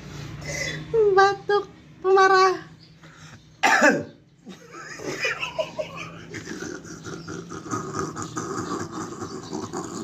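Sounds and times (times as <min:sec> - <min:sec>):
person coughing harshly: 0:03.6 - 0:04.1
broken vocal sounds: 0:06.0 - 0:10.0.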